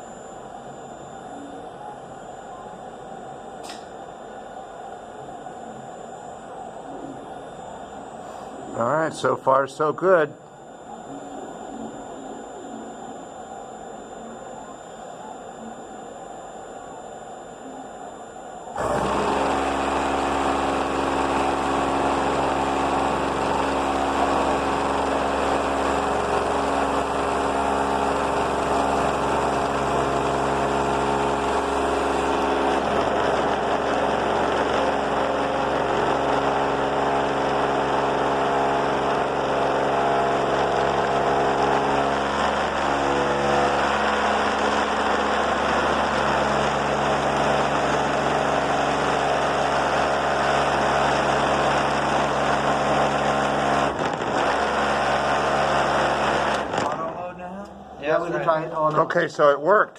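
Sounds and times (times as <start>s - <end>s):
air compressor running: 0.0s - 2.2s, 2.8s - 17.3s, 18.0s - 58.6s.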